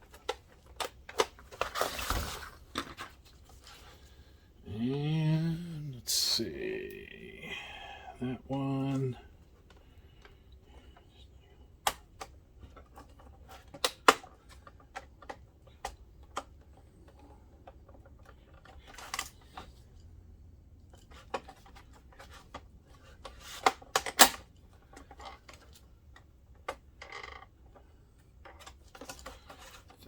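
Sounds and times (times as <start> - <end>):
plastic parts clicking and scraping: 0.0 - 4.1, 11.8 - 19.8, 21.0 - 30.0.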